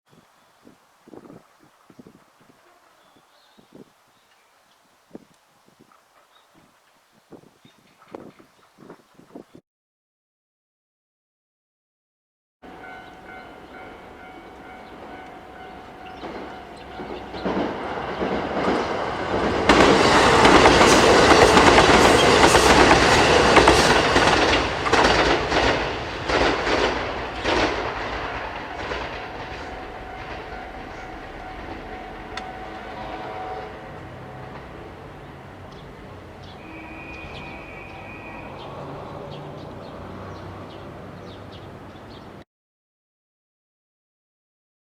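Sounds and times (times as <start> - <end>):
level crossing warning bell: 12.6 - 24.5, 27.4 - 42.4
diesel train passing: 12.6 - 42.4
wheels clacking over rail joints: 12.7 - 42.4.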